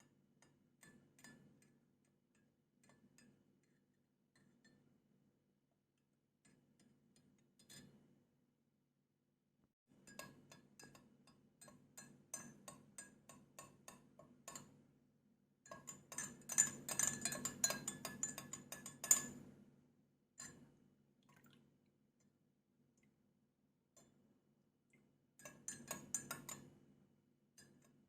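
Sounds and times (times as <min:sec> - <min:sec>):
spoon clinking against glass: 0:15.7 - 0:19.4.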